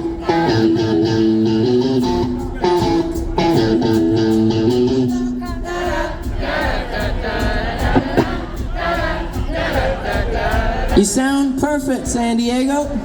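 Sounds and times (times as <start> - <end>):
electric guitar melody: 0.0 - 5.4
live rock band playing: 0.0 - 5.6
crowd singing along: 0.0 - 13.0.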